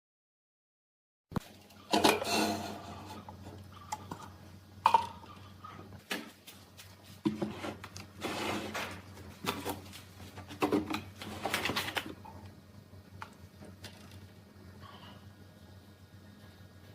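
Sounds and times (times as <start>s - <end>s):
objects clattering being set down: 1.5s - 3.2s.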